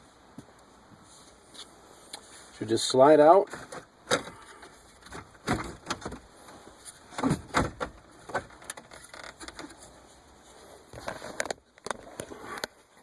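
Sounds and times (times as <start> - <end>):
plastic and metal knocks and scrapes: 5.0 - 6.3, 7.1 - 9.8.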